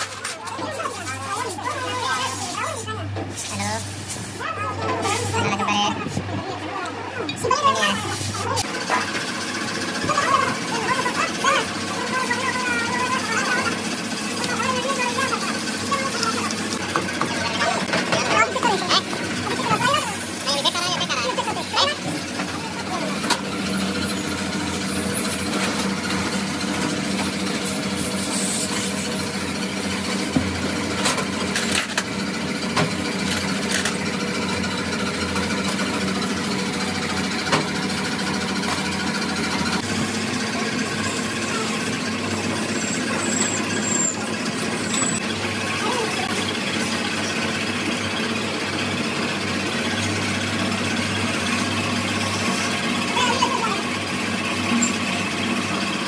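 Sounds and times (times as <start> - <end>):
machinery humming: 0.0 - 56.0.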